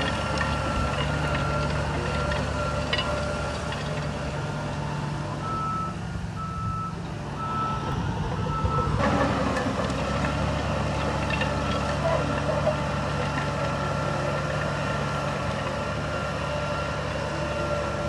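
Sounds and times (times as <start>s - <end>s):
diesel engine running: 0.0s - 18.0s
reversing alarm beeping: 5.4s - 9.0s.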